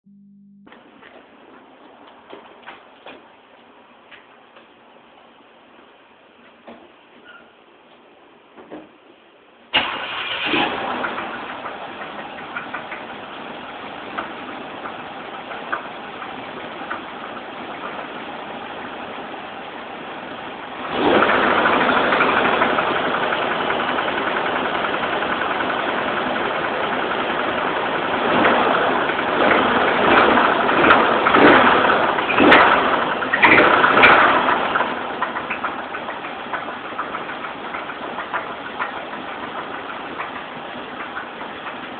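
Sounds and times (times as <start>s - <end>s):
car engine knocking: 10.9s - 41.9s.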